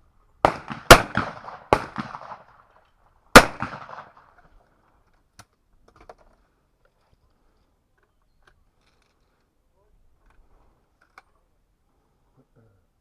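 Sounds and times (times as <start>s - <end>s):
shotgun shot: 0.5s - 2.5s, 3.4s - 4.2s.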